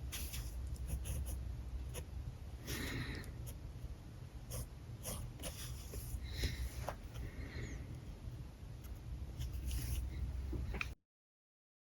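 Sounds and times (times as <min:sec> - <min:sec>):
marker stroking across paper: 0:00.0 - 0:02.1, 0:09.4 - 0:10.2.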